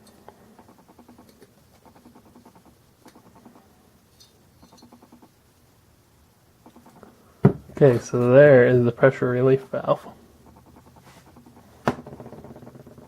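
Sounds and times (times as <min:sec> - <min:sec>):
faint rapid clicking of a tool: 0:00.0 - 0:03.6.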